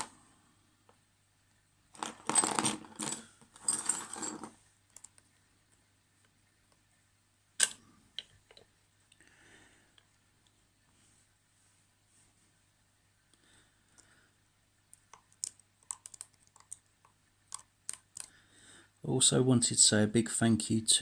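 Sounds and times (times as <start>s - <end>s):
lock picks scraping padlock: 17.5s - 18.3s.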